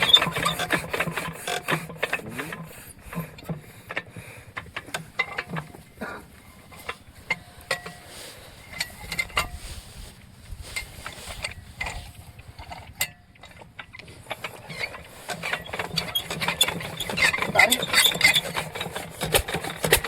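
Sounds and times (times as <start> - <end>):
short squeaks: 0.0 - 0.8, 14.3 - 19.0.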